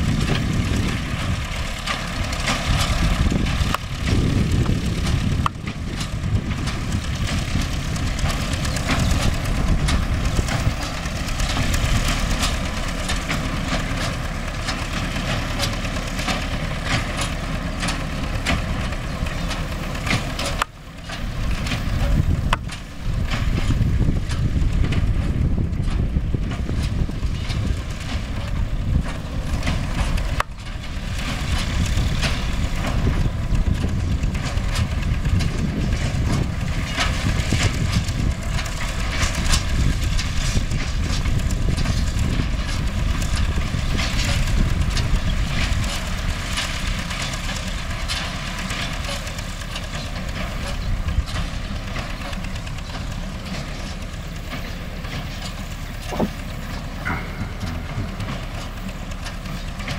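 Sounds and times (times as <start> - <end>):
baler machinery clattering: 0.0 - 59.9
tractor diesel engine running: 0.0 - 59.9.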